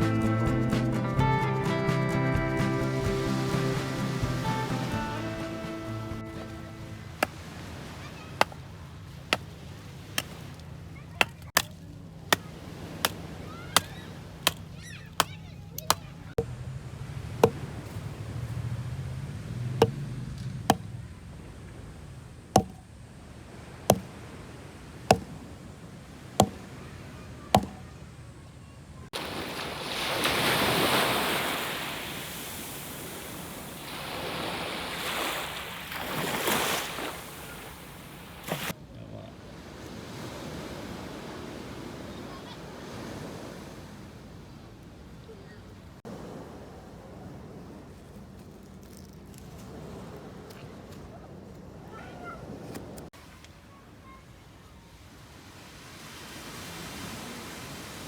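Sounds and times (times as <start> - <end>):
blade chopping knocks: 13.8 - 16.5, 17.4 - 18.0, 19.8 - 20.9, 22.6 - 22.8, 25.1 - 25.4, 26.4 - 26.7, 27.6 - 27.9.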